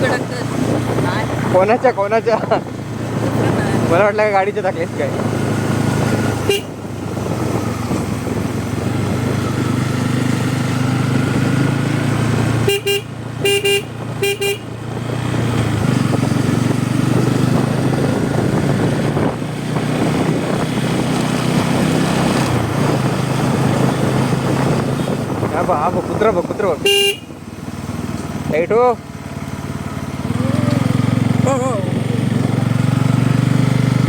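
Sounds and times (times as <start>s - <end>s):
motorcycle engine running: 0.0s - 34.0s
horn beeping: 6.4s - 6.8s, 12.6s - 14.8s, 26.8s - 27.4s.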